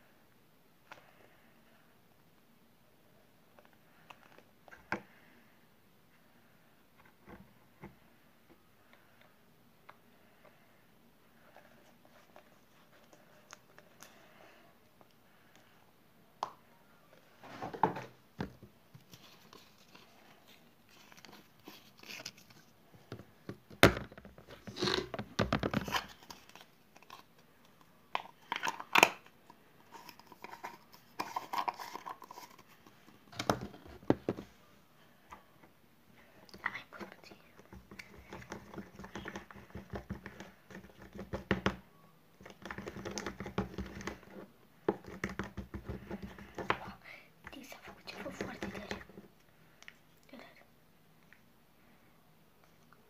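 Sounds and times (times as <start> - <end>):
rustling and crinkling objects: 17.2 - 35.5.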